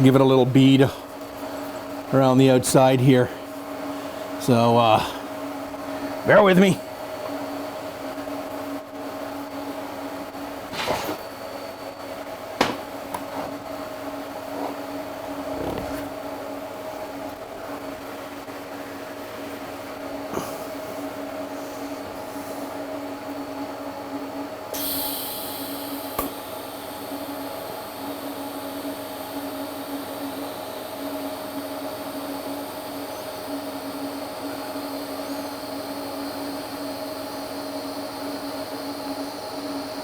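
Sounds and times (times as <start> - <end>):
constant hum: 0.0 - 24.9.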